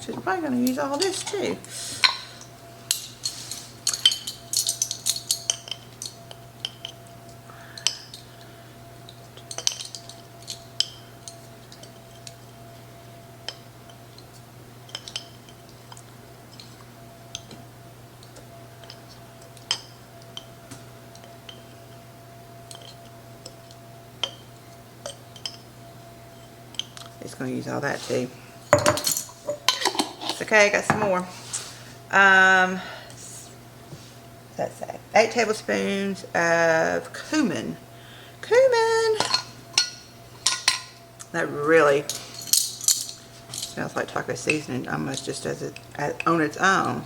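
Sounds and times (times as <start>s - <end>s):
spoon clinking and scraping: 2.9s - 7.0s.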